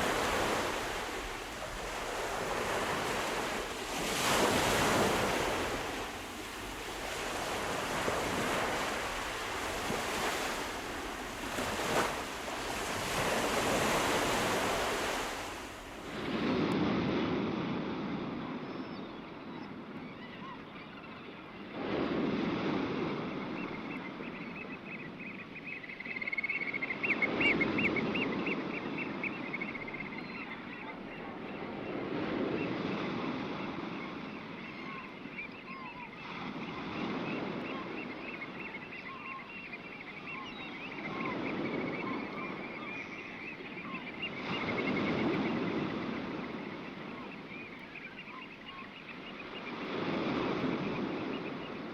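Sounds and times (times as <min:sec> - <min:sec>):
sea waves washing in: 0:00.0 - 0:18.3.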